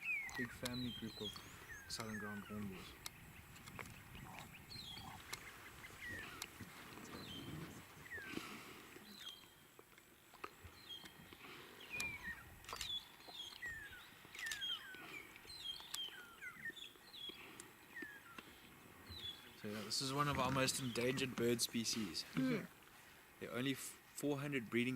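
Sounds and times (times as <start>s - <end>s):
birds whistling: 0.0s - 9.6s, 10.8s - 21.3s
sharp clicks: 0.2s - 4.5s, 14.3s - 14.8s.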